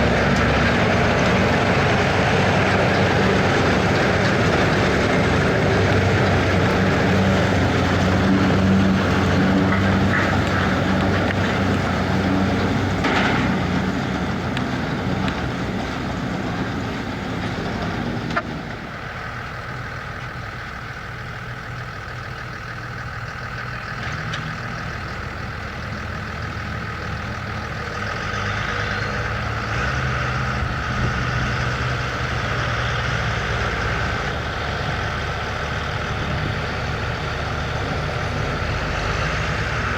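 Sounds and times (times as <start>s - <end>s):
potato harvester working: 0.0s - 20.4s
tractor engine running: 0.0s - 39.9s.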